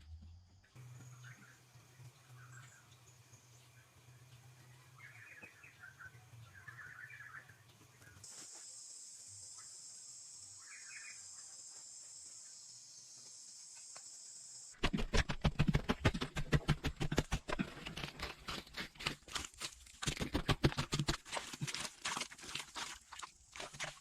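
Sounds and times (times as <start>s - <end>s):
bird chirp: 0.8s - 8.3s, 9.5s - 11.8s
insects trilling: 8.0s - 14.8s.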